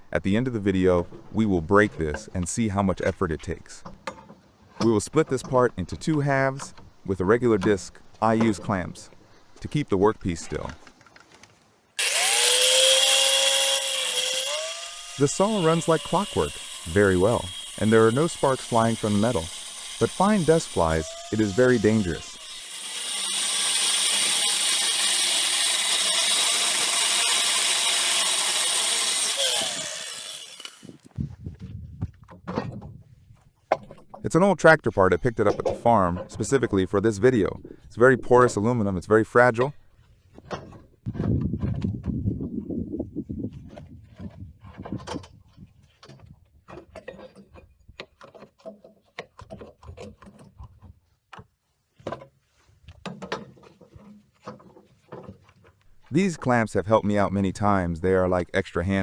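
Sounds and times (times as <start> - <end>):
power saw cutting metal: 12.0 - 31.1
saw winding down: 12.0 - 31.1.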